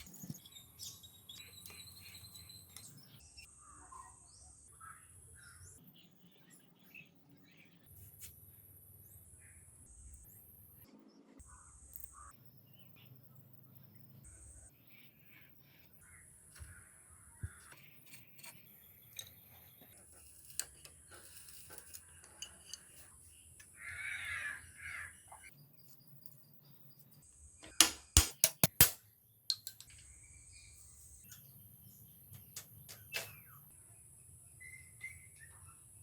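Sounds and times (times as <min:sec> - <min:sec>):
loud sharp clicks or knocks: 0:27.6 - 0:29.0.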